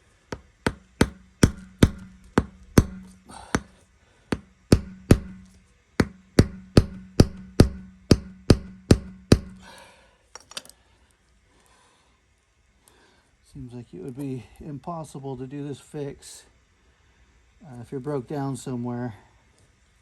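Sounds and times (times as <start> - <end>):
hammer striking metal tool: 0.7 - 3.7, 4.3 - 9.7.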